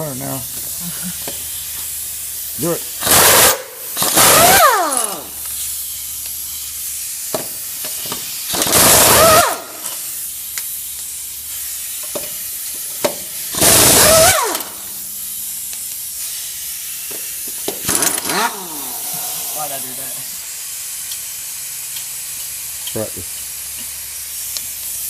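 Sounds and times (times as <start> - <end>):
impact wrench hissing rattle: 0.0 - 25.0
motor whine spinning down: 18.1 - 19.6.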